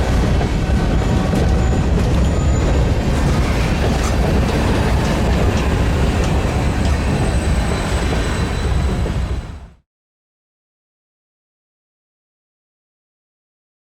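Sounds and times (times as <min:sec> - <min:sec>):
wheels clicking over rail joints: 0:00.0 - 0:09.1
freight train rumble: 0:00.0 - 0:09.8
faint high-pitched wheel squeal: 0:01.0 - 0:09.6.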